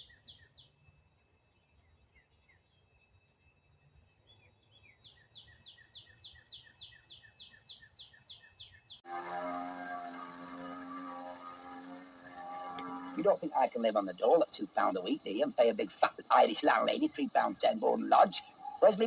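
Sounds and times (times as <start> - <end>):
bird chirping: 0.0 - 19.0
person speaking: 13.0 - 19.0.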